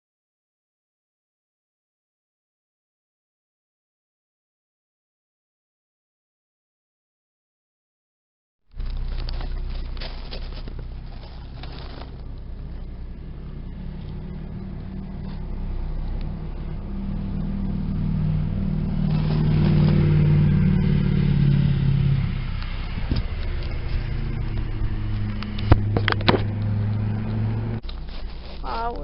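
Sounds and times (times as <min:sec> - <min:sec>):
vehicle engine running: 0:08.7 - 0:29.0.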